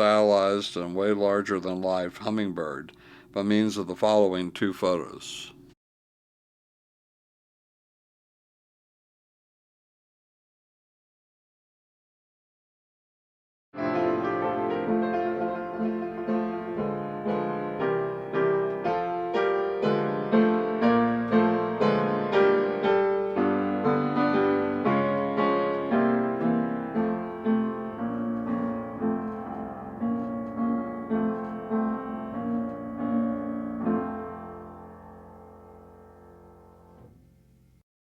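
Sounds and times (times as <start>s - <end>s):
slow solo piano: 13.8s - 37.6s.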